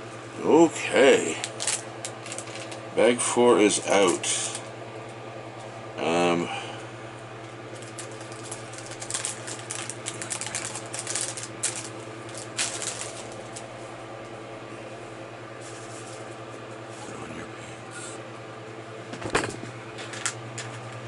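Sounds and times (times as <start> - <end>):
steady low hum: 0.0 - 21.0
plastic pieces clicking and rattling: 1.4 - 2.8, 7.8 - 13.6.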